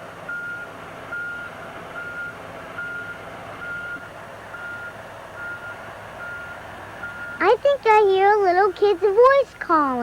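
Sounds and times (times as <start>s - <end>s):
diesel engine running: 0.0s - 10.0s
backup alarm beeping: 4.6s - 7.5s.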